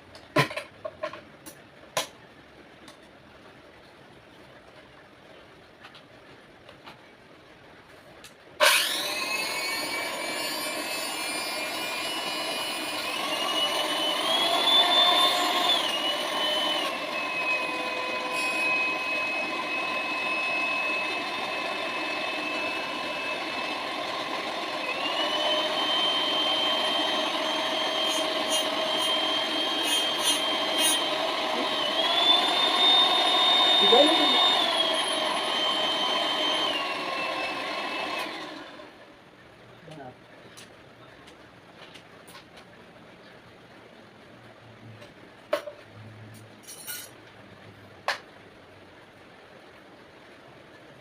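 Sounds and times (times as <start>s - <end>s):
electric mixer motor whining: 8.6s - 39.0s.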